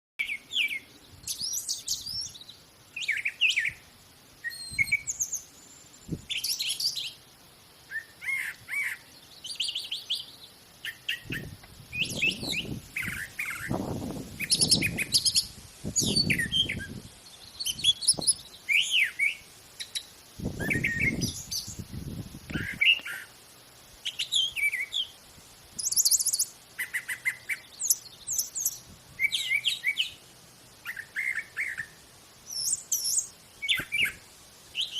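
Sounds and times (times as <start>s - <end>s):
songbirds chirping and trilling: 0.2s - 34.9s.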